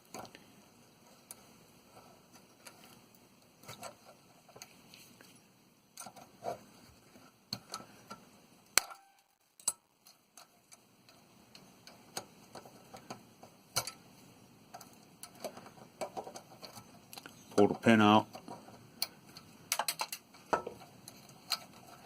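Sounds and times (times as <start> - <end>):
metal tools clicking and tapping: 8.8 - 14.0, 14.7 - 22.0.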